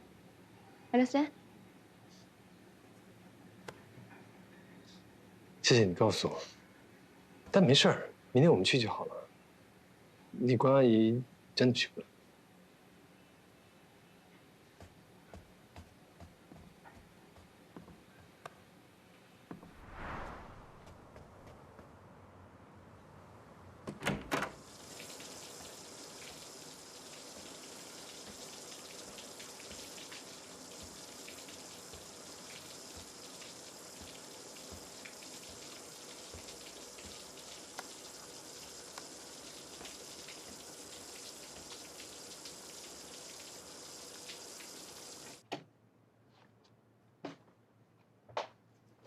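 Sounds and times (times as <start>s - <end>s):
water running: 24.6s - 45.4s.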